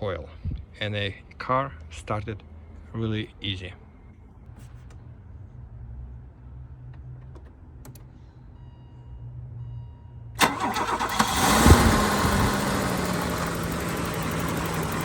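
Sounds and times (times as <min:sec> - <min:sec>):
car engine starting and idling: 0:10.4 - 0:15.0.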